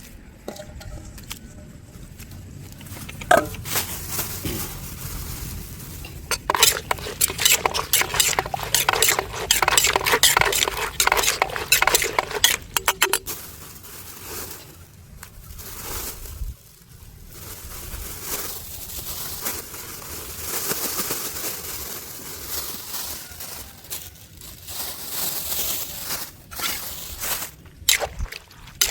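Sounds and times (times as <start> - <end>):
utensils clinking against dish: 6.2 - 13.3.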